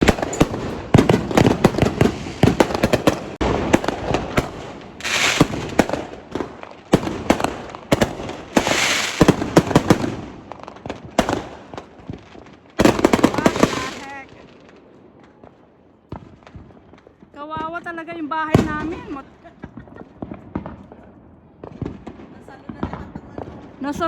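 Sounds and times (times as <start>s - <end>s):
crackling hissing firework bursts: 0.0s - 11.8s, 12.8s - 14.2s
firecrackers banging and popping: 0.0s - 24.0s.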